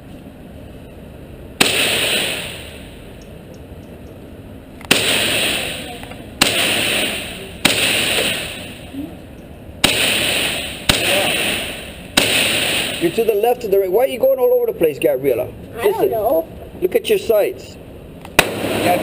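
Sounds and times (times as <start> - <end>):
gunshots echoing: 1.6 - 3.1, 4.8 - 9.0, 9.8 - 13.4, 18.3 - 19.0.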